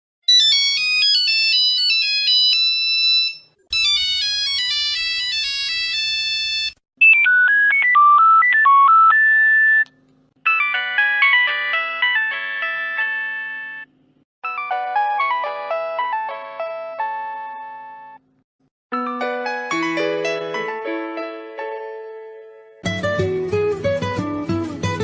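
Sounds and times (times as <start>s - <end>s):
phone ringtone melodies: 0.3s - 9.8s, 10.4s - 18.2s, 19.0s - 20.9s.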